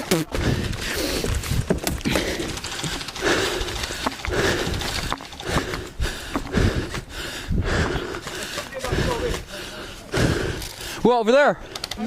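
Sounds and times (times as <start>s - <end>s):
sharp clicks: 0.0s - 6.6s, 11.6s - 12.0s
person breathing hard: 0.3s - 11.0s.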